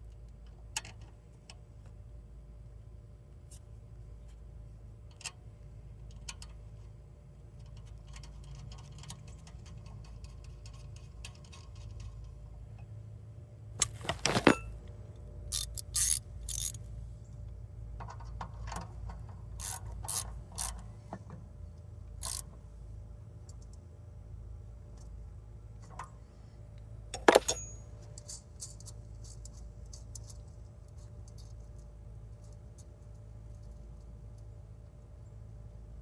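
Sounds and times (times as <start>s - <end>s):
metal tools clinking: 13.8s - 14.8s, 27.2s - 28.8s
ratchet wrench clicking: 15.5s - 16.8s, 19.6s - 20.8s, 22.2s - 22.5s
sharp metal clanks: 27.2s - 27.9s.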